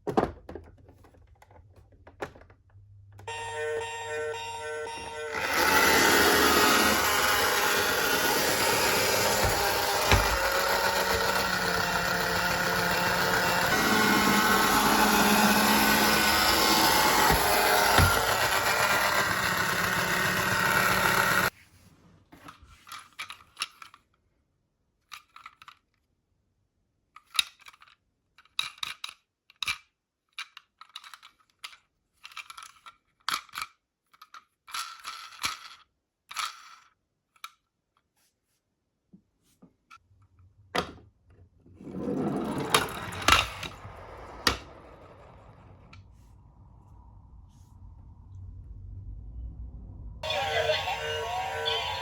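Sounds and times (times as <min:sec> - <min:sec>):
toy motor whirring: 0:05.0 - 0:21.6, 0:30.4 - 0:37.6, 0:41.9 - 0:45.6
toy handling clicks and rustles: 0:05.4 - 0:14.1, 0:22.4 - 0:24.3, 0:25.0 - 0:26.2, 0:27.1 - 0:38.2.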